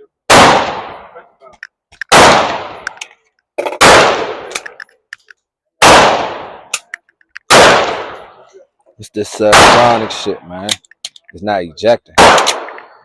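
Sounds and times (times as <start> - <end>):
gunshots with echo: 0.3 - 1.2, 2.1 - 2.8, 3.8 - 4.5, 5.8 - 6.7, 7.5 - 8.4, 9.5 - 10.4, 12.2 - 12.9.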